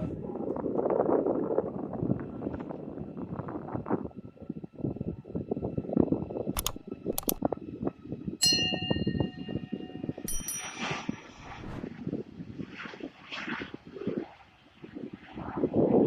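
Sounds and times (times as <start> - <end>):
wind rumbling on microphone: 0.0 - 16.0
sharp clicks: 6.6 - 7.4
bell-like ringing tone: 8.4 - 11.9.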